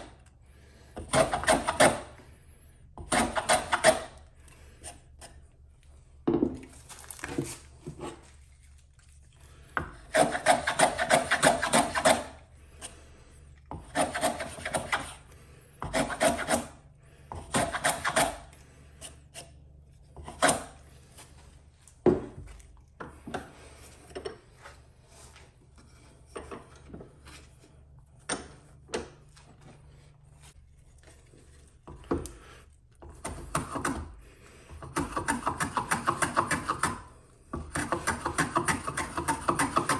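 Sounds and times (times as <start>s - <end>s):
hand plane scraping wood: 0.9s - 2.2s, 3.0s - 5.5s, 9.8s - 13.2s, 13.8s - 15.2s, 15.8s - 16.8s, 17.4s - 21.5s, 37.7s - 39.9s
knocks of wood and tool: 22.0s - 24.4s.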